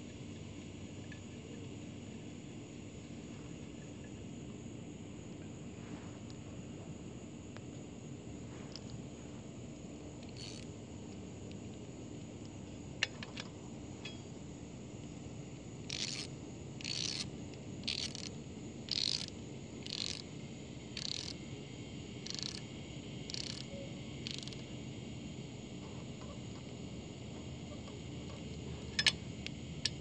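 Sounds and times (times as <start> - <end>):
ratchet wrench pawl clicking: 10.2 - 10.7, 15.9 - 20.3, 21.0 - 21.4, 22.2 - 22.7, 23.3 - 24.6, 28.3 - 30.0.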